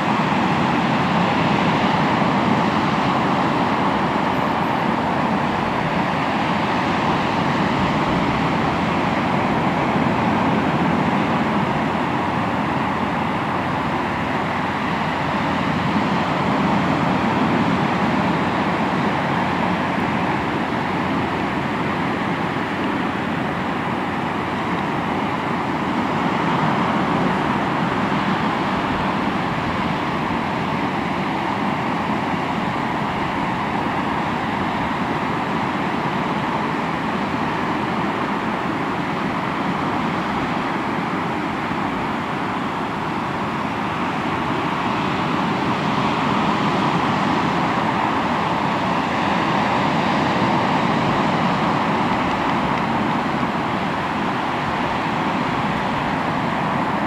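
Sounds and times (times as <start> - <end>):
sea waves breaking on shore: 0.0 - 57.0.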